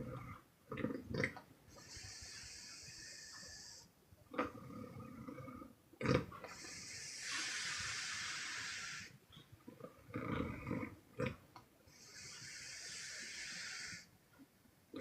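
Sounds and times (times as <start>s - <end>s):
hissing puffing breath: 6.5s - 9.2s.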